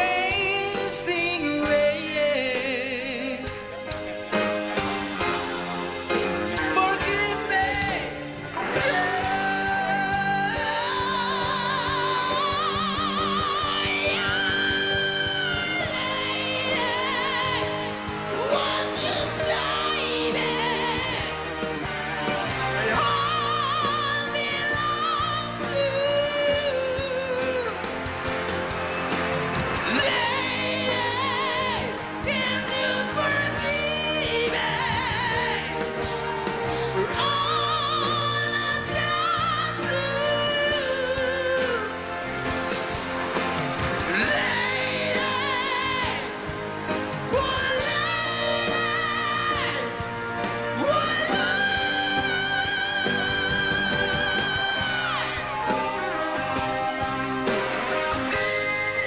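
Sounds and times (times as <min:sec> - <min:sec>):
karaoke backing track: 0:00.0 - 0:59.0
person singing with vibrato: 0:06.5 - 0:27.9, 0:44.0 - 0:59.0.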